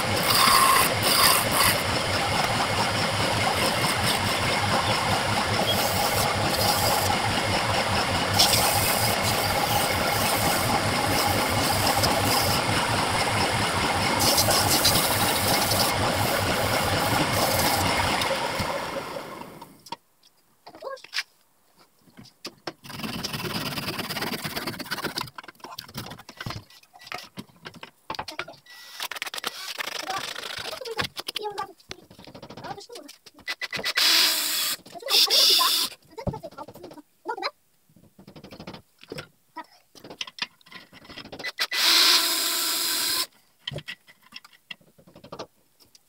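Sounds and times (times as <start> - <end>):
wood lathe running: 0.0 - 19.7, 41.7 - 43.3.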